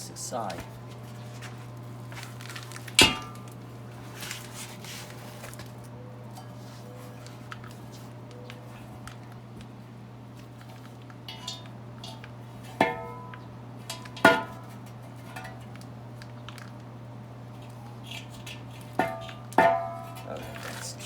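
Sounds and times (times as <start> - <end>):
steady low hum: 0.0 - 21.0
metal rim parts clanking: 2.2 - 5.7, 10.5 - 16.8, 17.6 - 21.0.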